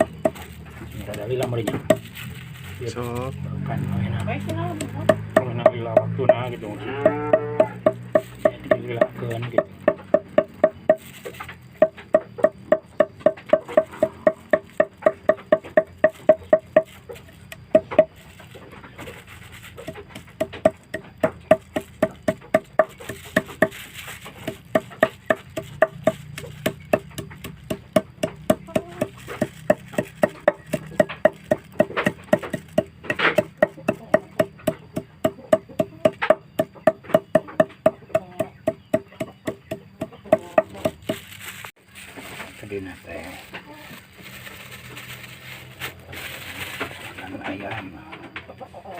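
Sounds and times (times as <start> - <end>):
rhythmic knocks on wooden board: 4.4 - 11.1, 11.7 - 18.1, 24.4 - 41.2.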